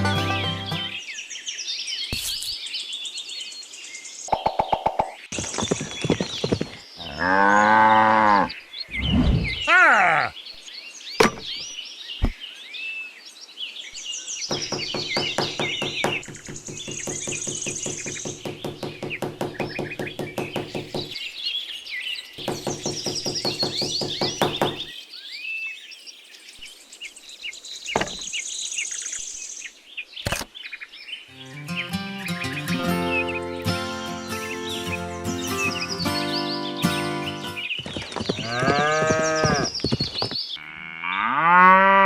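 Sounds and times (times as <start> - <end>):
small birds chirping: 0.4 - 41.4
rapid mechanical knocking: 14.5 - 21.2, 22.4 - 24.8.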